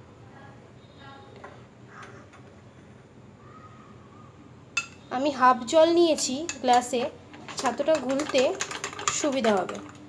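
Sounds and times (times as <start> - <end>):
spoon stirring in glass: 6.1 - 10.0.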